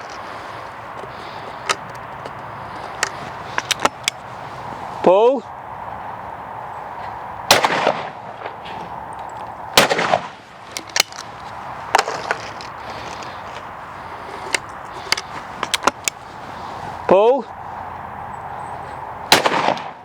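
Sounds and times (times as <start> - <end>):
shotgun shots: 7.5 - 8.6, 9.8 - 10.4, 19.3 - 20.0.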